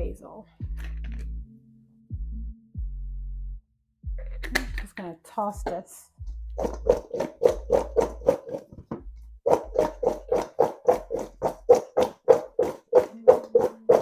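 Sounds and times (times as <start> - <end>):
food knocking against a bowl: 6.6 - 14.0.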